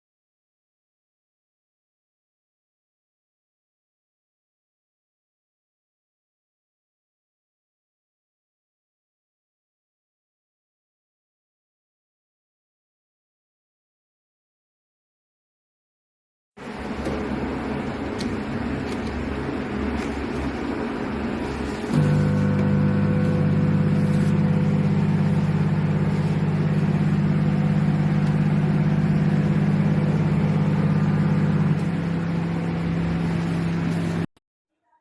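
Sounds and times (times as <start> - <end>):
microwave oven humming: 16.6 - 34.3.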